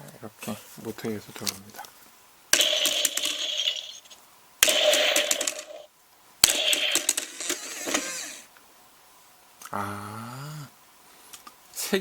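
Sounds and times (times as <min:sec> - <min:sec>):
toy target clattering and whirring: 0:02.5 - 0:08.5.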